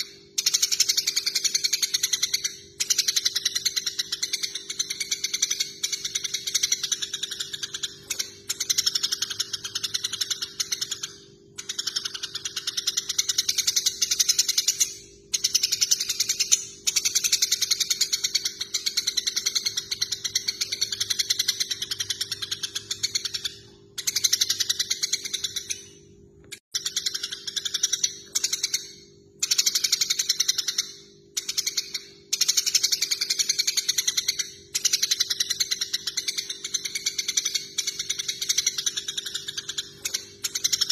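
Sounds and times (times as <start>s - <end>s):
sparrows chattering: 0.0s - 26.0s, 26.7s - 40.9s.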